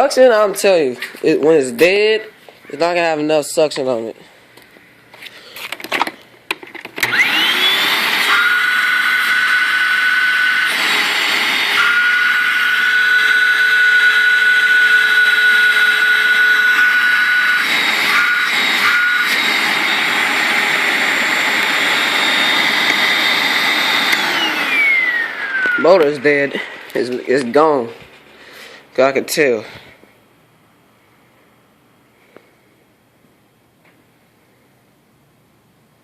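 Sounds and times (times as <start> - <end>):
vacuum cleaner motor whining: 7.0 - 27.4.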